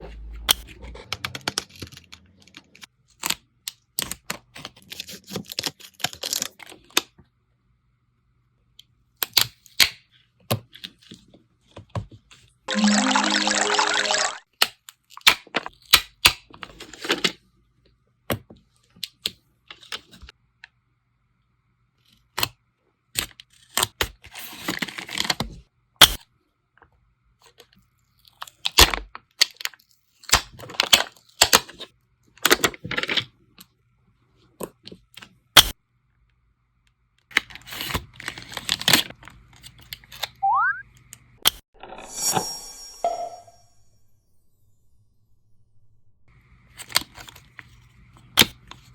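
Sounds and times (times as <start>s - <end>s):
short rising tone: 41.9s - 46.2s.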